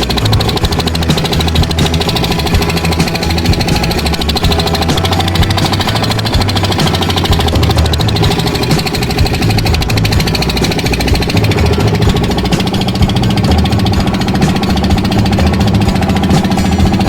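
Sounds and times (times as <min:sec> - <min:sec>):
small boat engine running: 0:00.0 - 0:17.0.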